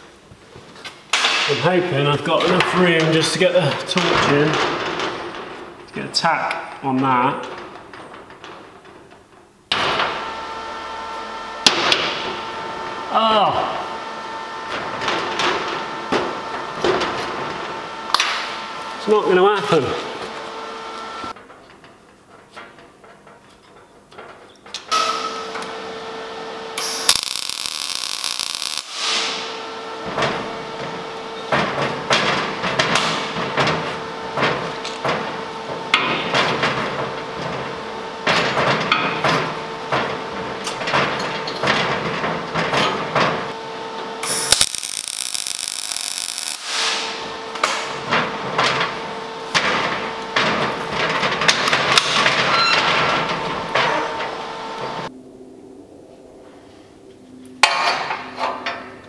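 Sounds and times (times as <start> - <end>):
steady tool hum: 25.5 - 38.3, 43.4 - 51.0
crackling and clicking: 44.2 - 46.7.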